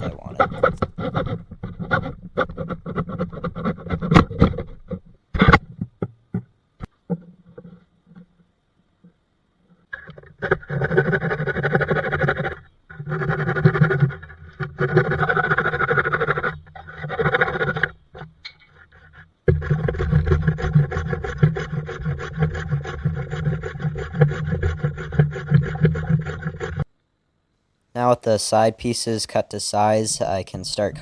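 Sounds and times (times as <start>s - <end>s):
hand saw rasping through wood: 10.4s - 18.0s, 18.8s - 26.8s.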